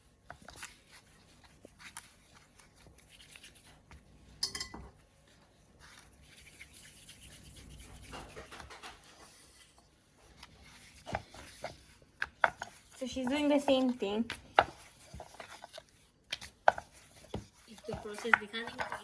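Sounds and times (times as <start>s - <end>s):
light rubbing and scraping: 0.3s - 19.0s
utensil clinking on dish: 4.4s - 5.0s.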